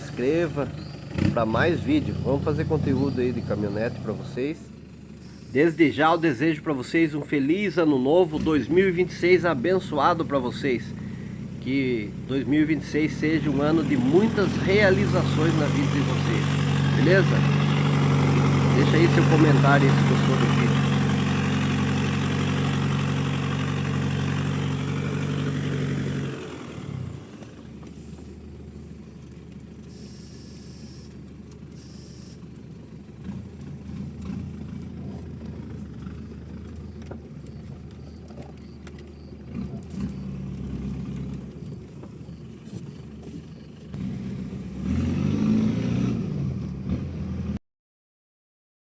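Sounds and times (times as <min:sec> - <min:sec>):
diesel engine idling: 0:00.0 - 0:45.5.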